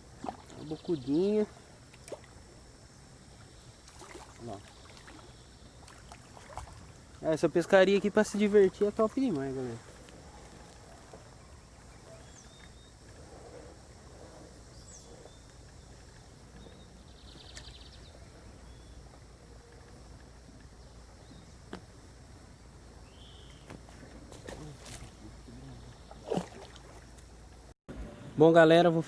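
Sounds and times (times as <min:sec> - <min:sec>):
faint bird chirps: 0:03.3 - 0:06.6, 0:09.6 - 0:21.6, 0:23.0 - 0:27.0.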